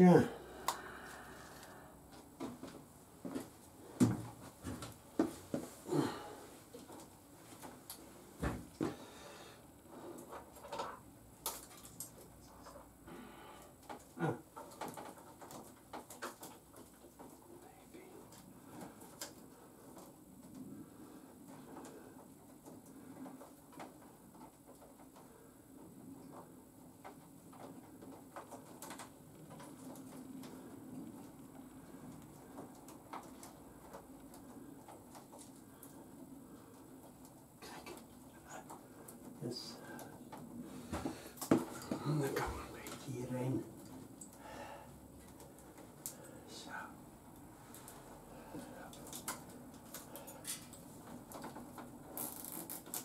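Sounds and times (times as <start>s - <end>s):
small parts clicking and tapping: 10.2s - 12.9s, 47.3s - 53.0s.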